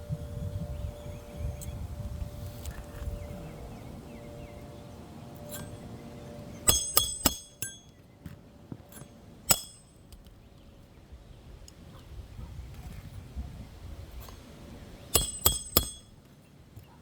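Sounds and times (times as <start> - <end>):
hatchet striking roofing nails: 6.7 - 7.8, 8.9 - 10.2, 15.2 - 16.2.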